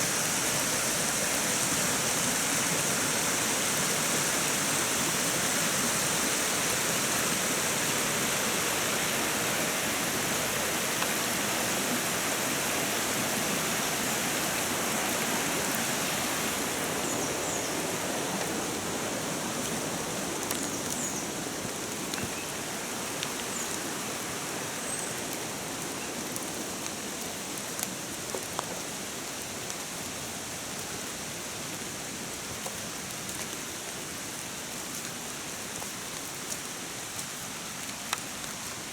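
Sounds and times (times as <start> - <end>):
river current rushing: 0.0 - 22.1
rain hissing on water: 0.0 - 38.9.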